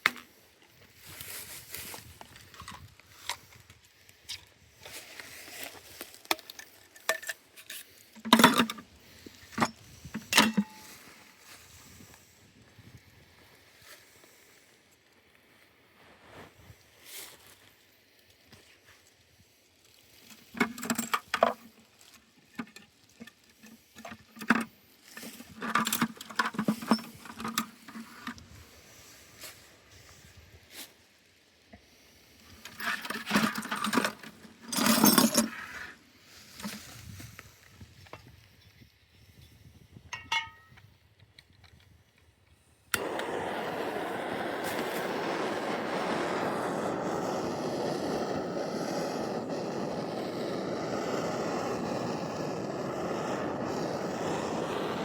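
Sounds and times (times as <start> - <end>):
clinks and knocks on pipe fittings: 40.1 - 40.9.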